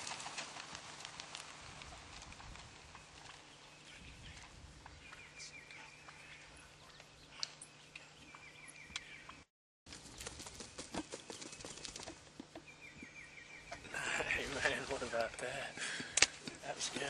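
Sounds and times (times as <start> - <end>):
bird calling: 2.9 - 9.5, 10.7 - 16.9.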